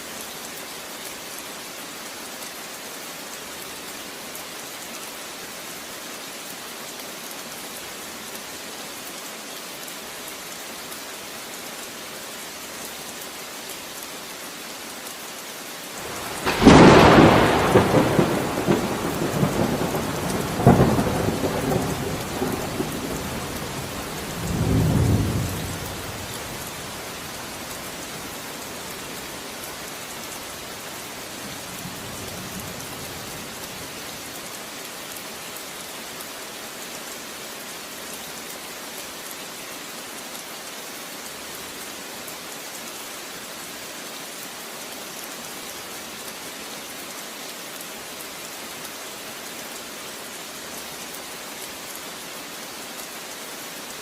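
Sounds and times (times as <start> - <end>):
steady rain: 0.0 - 54.0
thunderclap rumbling: 16.0 - 26.5
sharp thunder crack: 16.1 - 19.9.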